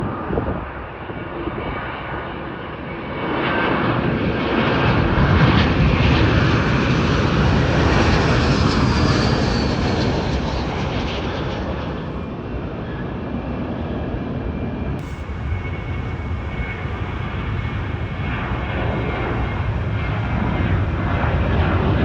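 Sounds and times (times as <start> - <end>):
jet airliner roar: 0.0 - 22.0
high whine sliding down: 15.0 - 22.0.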